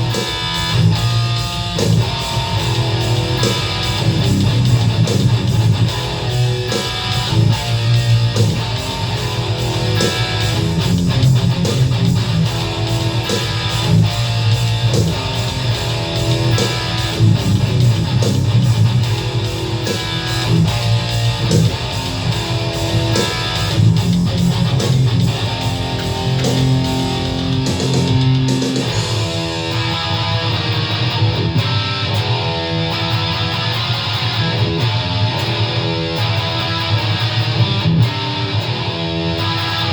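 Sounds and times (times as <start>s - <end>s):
drum machine beat: 0.0s - 31.9s
distorted electric guitar riffs: 0.0s - 39.9s.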